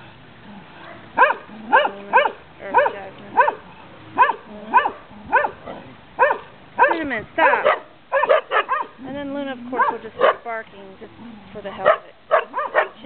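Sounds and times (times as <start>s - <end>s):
dog barking: 0.8s - 3.6s, 4.2s - 9.0s, 9.8s - 10.5s, 11.8s - 13.0s.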